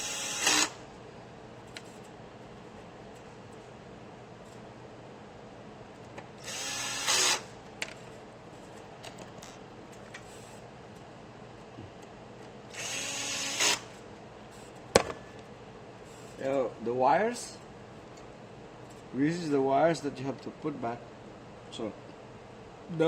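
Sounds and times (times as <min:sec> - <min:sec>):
electric screwdriver whirring: 0:00.0 - 0:00.8, 0:06.4 - 0:07.5, 0:12.7 - 0:13.9.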